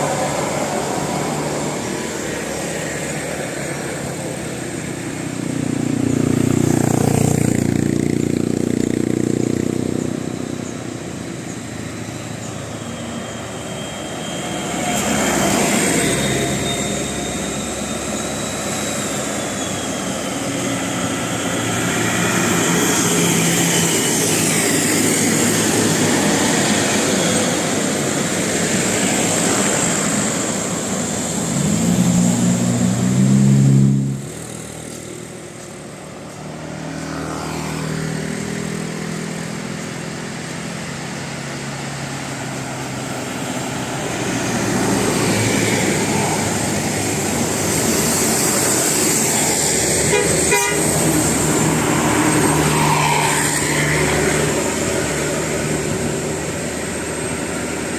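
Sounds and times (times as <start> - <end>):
road noise from passing buses: 0.0 - 57.9
bus horn playing stepped notes: 50.1 - 51.2.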